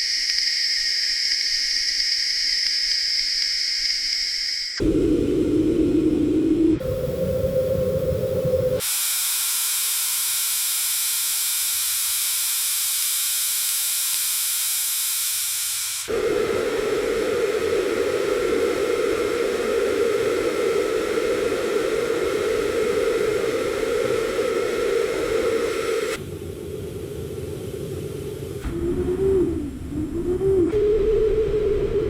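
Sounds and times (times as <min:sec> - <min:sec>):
wind rushing: 0:04.8 - 0:08.8, 0:16.1 - 0:32.0.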